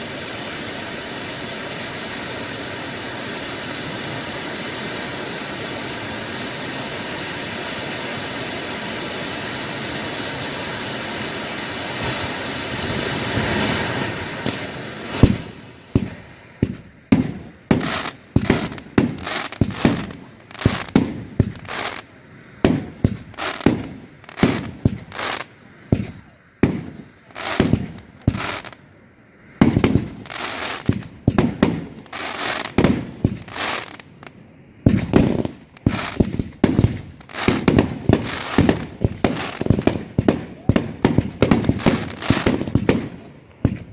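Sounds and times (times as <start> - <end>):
fireworks hissing rush: 0.0 - 43.9
firework bangs with echo: 12.0 - 22.0, 22.6 - 28.7, 29.6 - 33.9, 34.9 - 43.9.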